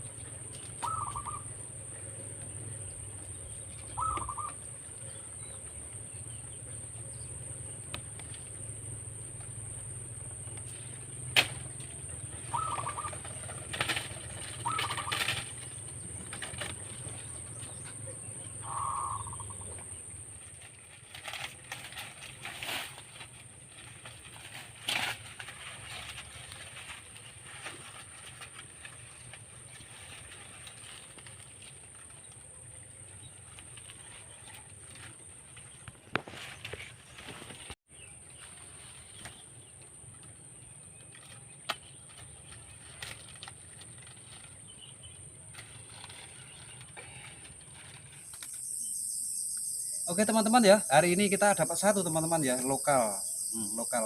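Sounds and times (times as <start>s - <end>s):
bird wings flapping: 12.5s - 17.3s
high-pitched insect buzz: 48.2s - 54.0s.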